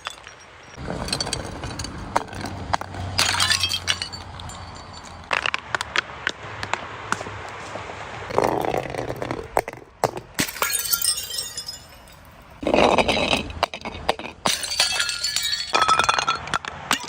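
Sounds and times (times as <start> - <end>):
glass bottles breaking: 0.0 - 5.3, 10.4 - 17.0.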